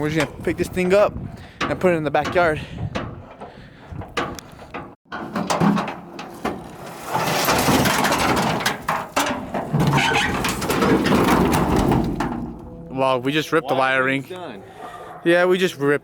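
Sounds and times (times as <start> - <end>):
rattling clatter: 0.0 - 12.8
truck bed clanking and scraping: 0.0 - 13.1.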